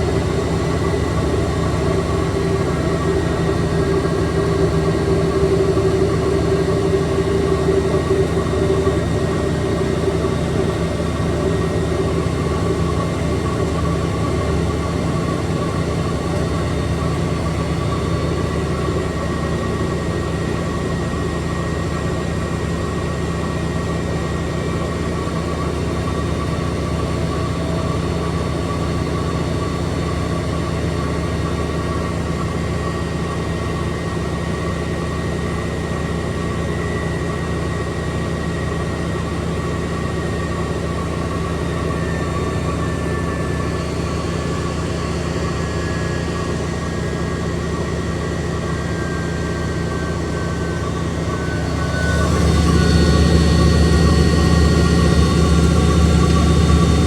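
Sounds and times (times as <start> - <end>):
washing machine motor hum: 0.0 - 23.0, 39.1 - 57.0
spinning drum whine: 0.0 - 57.0.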